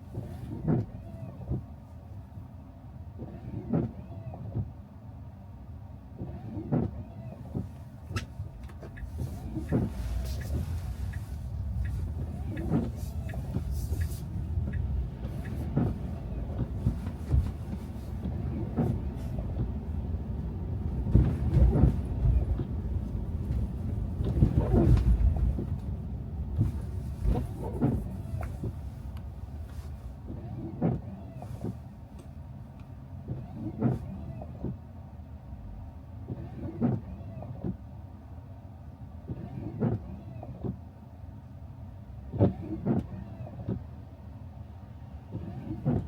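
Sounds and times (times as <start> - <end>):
tyre and engine rumble: 6.2 - 34.9
swish and knock: 8.2 - 19.4.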